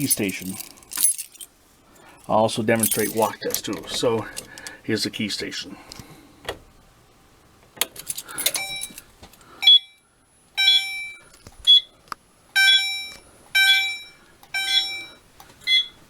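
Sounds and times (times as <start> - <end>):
key click and rattle: 2.8 - 4.7, 7.8 - 9.1
fire alarm chime: 8.6 - 9.0, 9.6 - 10.0, 10.6 - 11.8, 12.6 - 16.0.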